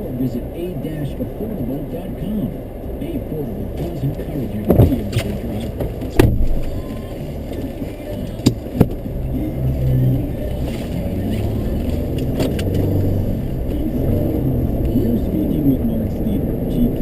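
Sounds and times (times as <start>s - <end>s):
car engine and road noise: 0.0s - 17.0s
sharp knocks: 5.8s - 6.6s.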